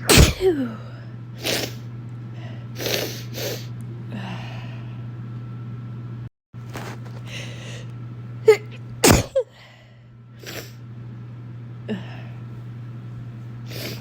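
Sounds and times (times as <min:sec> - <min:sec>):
person sneezing: 0:00.0 - 0:00.8, 0:01.4 - 0:01.8, 0:08.5 - 0:09.5, 0:13.7 - 0:14.0.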